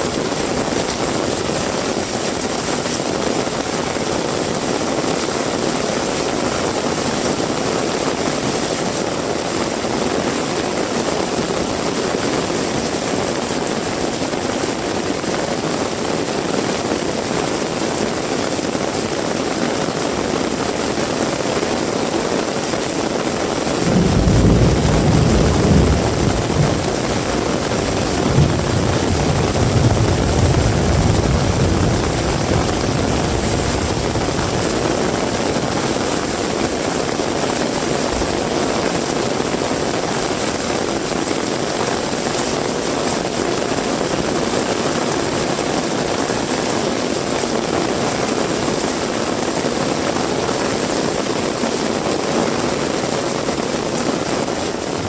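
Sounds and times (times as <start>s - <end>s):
heavy rain falling: 0.0s - 55.0s
low rumble: 24.4s - 35.6s.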